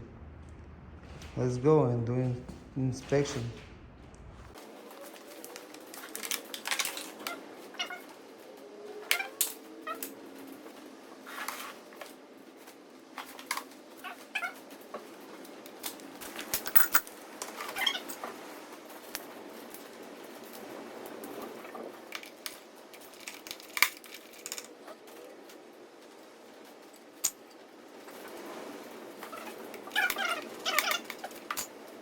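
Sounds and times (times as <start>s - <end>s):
tools clicking and knocking: 16.6s - 17.0s, 30.8s - 31.7s.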